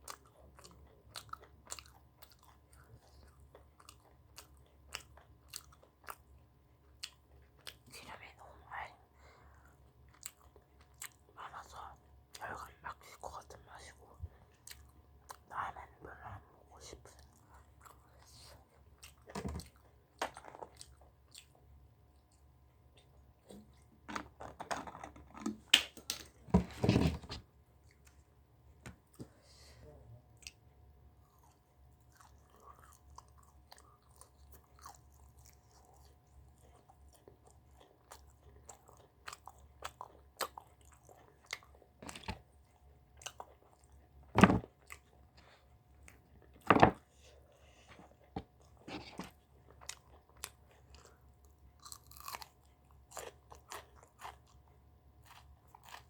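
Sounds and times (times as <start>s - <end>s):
crunchy chewing: 0.0s - 7.9s, 31.2s - 56.0s.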